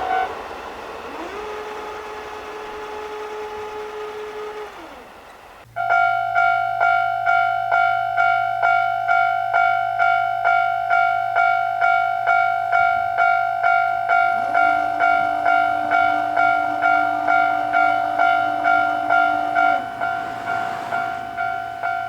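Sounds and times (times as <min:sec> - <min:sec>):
level-crossing warning bell: 0:00.0 - 0:05.0, 0:05.7 - 0:22.0
low steady tone: 0:05.7 - 0:22.0.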